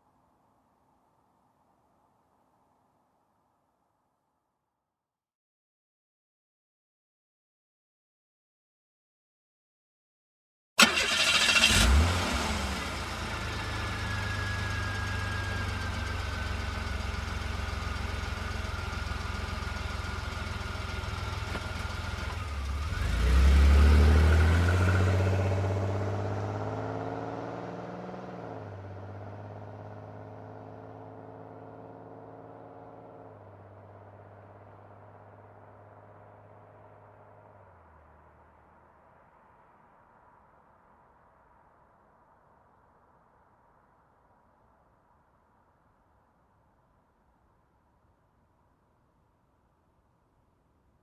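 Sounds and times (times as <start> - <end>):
car engine revving: 10.8 - 15.4, 19.2 - 34.6.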